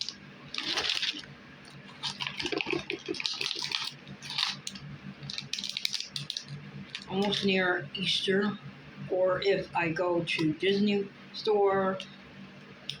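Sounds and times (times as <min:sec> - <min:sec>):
packaging crinkling and rustling: 0:00.0 - 0:07.5
faint low hum: 0:00.0 - 0:13.0.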